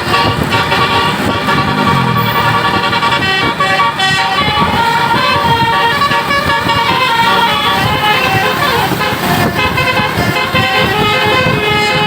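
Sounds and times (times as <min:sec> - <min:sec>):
bus horn playing a tune: 0:00.0 - 0:12.0.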